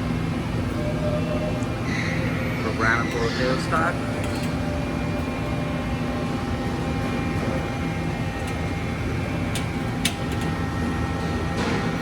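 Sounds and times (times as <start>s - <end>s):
faint steady whines: 0.0s - 12.0s
lathe mechanical hum: 0.0s - 12.0s.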